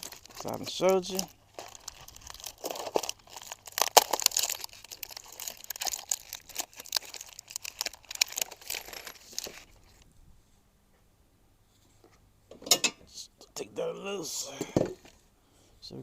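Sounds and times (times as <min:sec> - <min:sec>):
packaging crinkling: 0:00.0 - 0:10.0.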